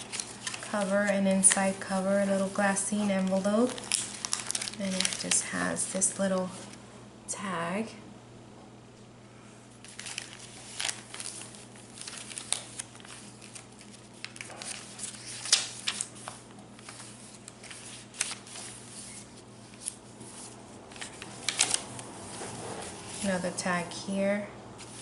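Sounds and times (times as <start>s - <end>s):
paper and card rustling: 0.0s - 6.8s, 9.8s - 23.6s, 24.8s - 25.0s
paper snap: 12.0s - 18.7s.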